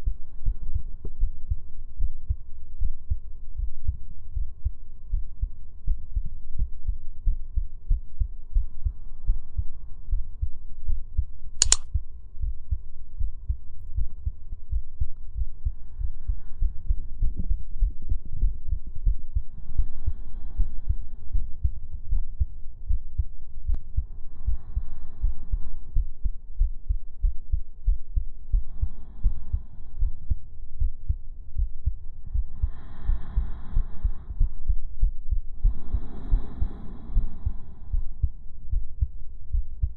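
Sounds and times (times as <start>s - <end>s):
amplified heartbeat thumps: 0.0s - 39.9s
sharp click: 11.6s - 11.9s.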